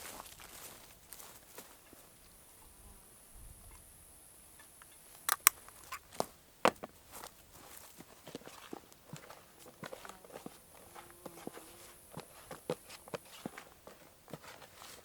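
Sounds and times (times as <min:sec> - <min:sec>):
sharp clicks and knocks: 0:05.3 - 0:06.0.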